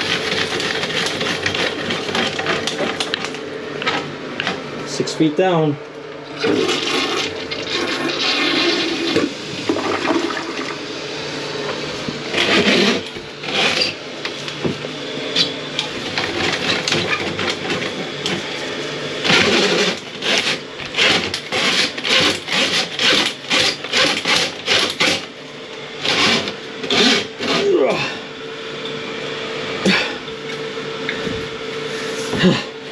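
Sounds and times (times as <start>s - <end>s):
water gurgling in toilet drain: 6.3s - 10.8s.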